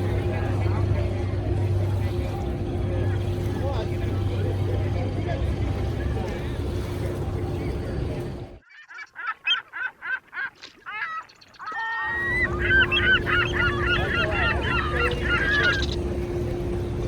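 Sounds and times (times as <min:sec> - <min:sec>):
steady background hum: 0:00.0 - 0:08.6, 0:12.1 - 0:17.0
geese honking: 0:00.0 - 0:10.2, 0:11.7 - 0:17.0.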